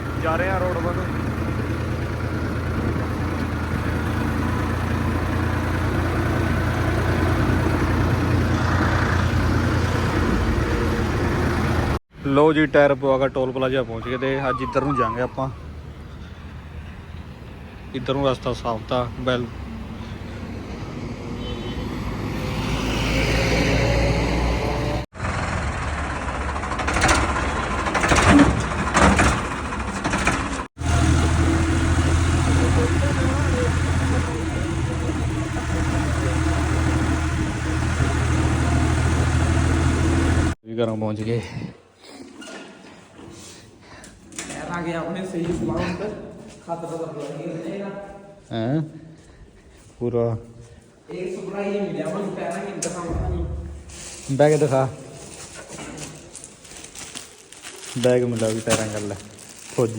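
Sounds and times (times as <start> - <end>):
tractor diesel engine running: 0.0 - 12.0, 24.6 - 40.6
road noise: 0.0 - 40.6, 49.1 - 59.9.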